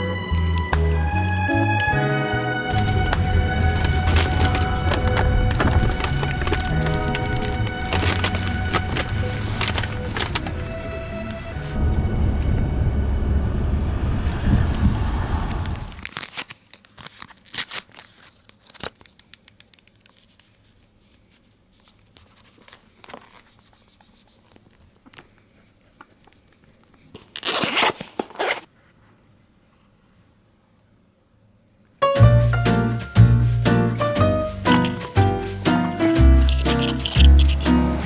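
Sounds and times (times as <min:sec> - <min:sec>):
loud dense sound: 0:02.3 - 0:16.0
packaging handling clicks and rustles: 0:02.7 - 0:10.5, 0:16.0 - 0:20.5, 0:36.4 - 0:37.8
packaging tearing: 0:02.7 - 0:10.5, 0:16.0 - 0:20.4, 0:27.2 - 0:28.7.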